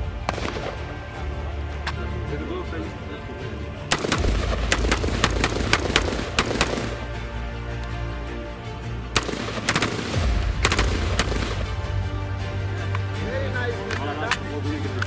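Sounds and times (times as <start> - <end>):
rifle firing single shots: 0.2 - 1.2, 1.8 - 8.0, 8.9 - 15.0.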